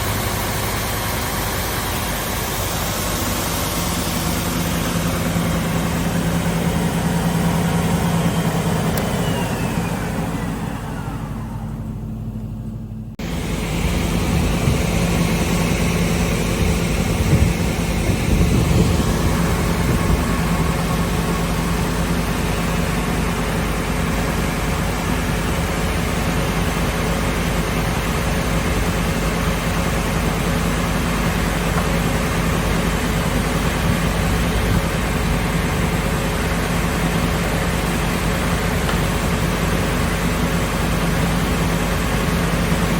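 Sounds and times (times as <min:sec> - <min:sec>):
belt sander hissing hum: 0:13.2 - 0:42.9.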